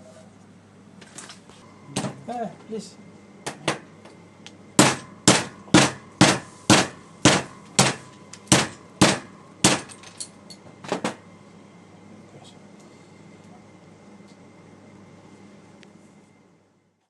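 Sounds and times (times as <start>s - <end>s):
sharp knocks: 4.8s - 10.0s.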